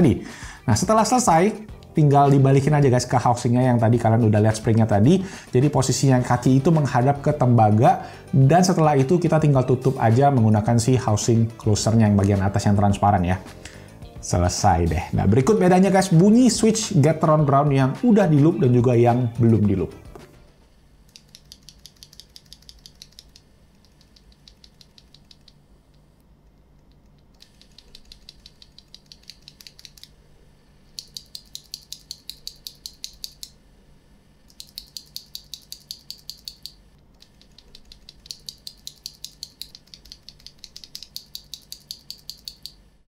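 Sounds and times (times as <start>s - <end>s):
mechanical keyboard switches clicking: 21.1s - 25.6s, 31.0s - 33.5s, 34.5s - 42.8s.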